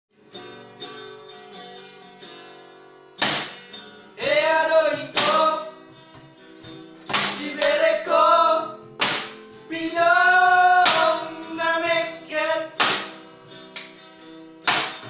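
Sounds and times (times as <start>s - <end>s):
plucked acoustic guitar: 0.1s - 15.0s
loud guitar strum: 3.2s - 6.2s, 7.0s - 9.5s, 10.3s - 14.0s, 14.6s - 15.0s
person singing: 4.2s - 5.7s, 7.2s - 8.8s, 9.7s - 13.0s.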